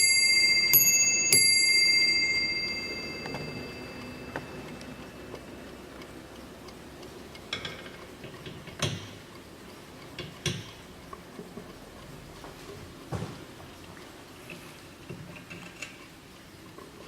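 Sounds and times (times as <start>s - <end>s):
mantel clock ticking: 0.0s - 12.4s.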